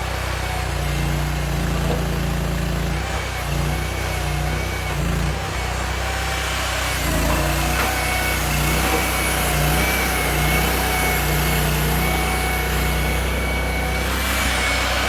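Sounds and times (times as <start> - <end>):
pile-driving machine engine running: 0.2 - 15.0.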